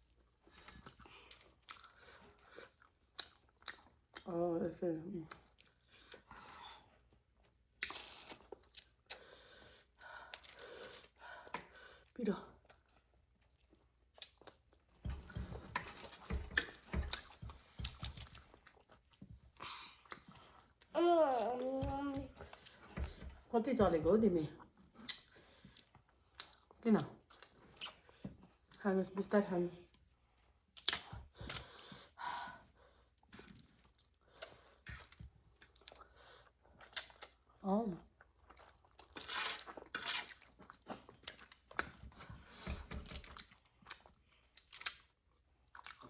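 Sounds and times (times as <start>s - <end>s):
chewing: 0.4s - 4.3s, 5.2s - 6.3s, 10.3s - 20.9s, 33.2s - 46.0s
mouth smacks and clicks: 25.0s - 25.3s.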